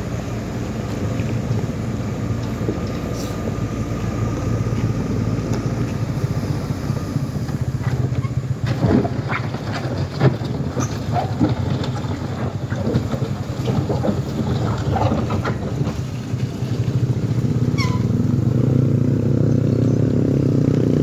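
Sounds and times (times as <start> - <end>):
higher steady engine note: 0.0 - 21.0
vehicle engine running: 0.0 - 21.0
knocks and clatter: 7.4 - 18.1.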